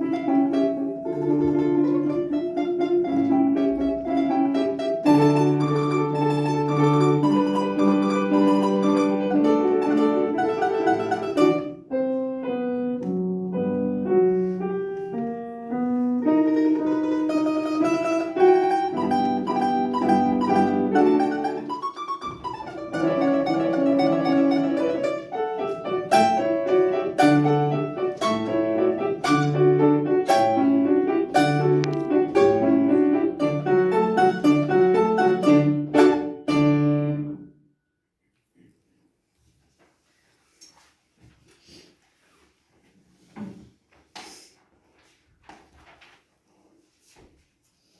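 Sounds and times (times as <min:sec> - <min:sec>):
solo piano classical piece: 0:00.0 - 0:37.6.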